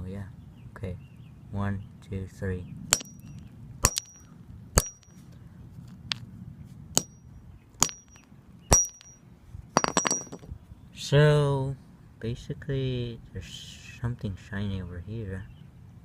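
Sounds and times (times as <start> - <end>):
hammer cracking rock: 2.9 - 5.1, 7.8 - 9.1, 9.8 - 10.4.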